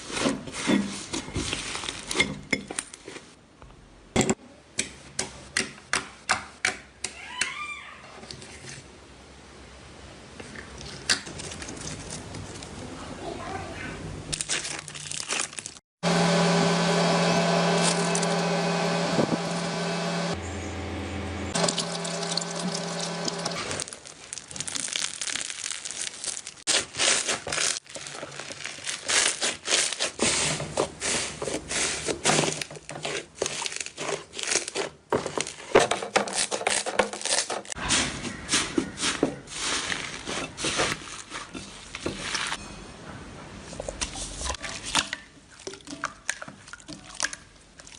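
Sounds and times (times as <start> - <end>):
steady humming drone: 16.0 - 23.8.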